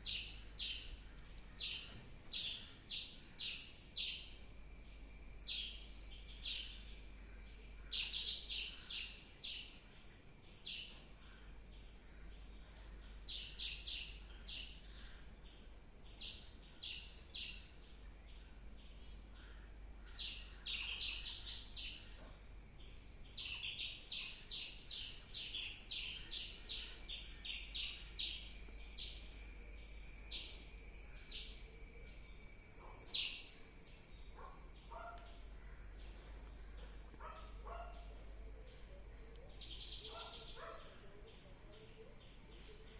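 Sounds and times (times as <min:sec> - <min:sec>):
squirrel chirping: 0:34.2 - 0:35.7.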